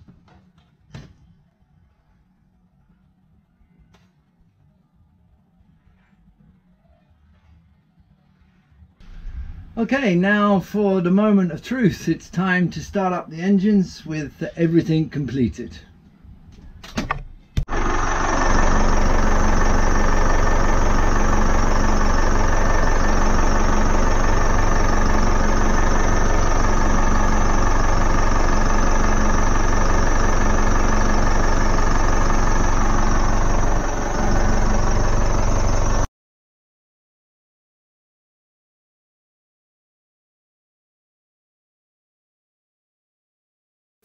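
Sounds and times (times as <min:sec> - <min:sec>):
diesel engines starting and idling: 0:08.4 - 0:15.7, 0:16.7 - 0:36.1.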